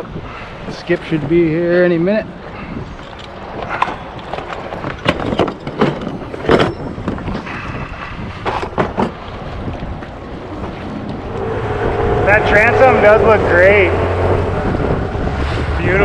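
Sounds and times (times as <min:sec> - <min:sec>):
wind on microphone: 0:00.0 - 0:16.0
low rumble: 0:09.4 - 0:16.0.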